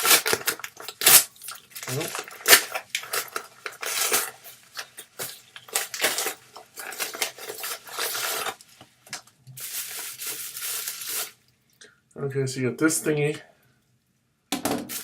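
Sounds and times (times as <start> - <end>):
plastic packaging crinkling: 0.0 - 11.4.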